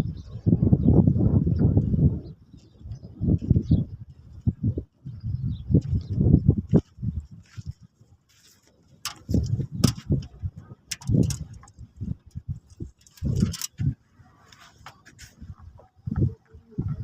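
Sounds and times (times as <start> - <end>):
birds tapping and scratching: 8.6 - 17.0
thuds and bumps at bird feeder: 9.1 - 11.8.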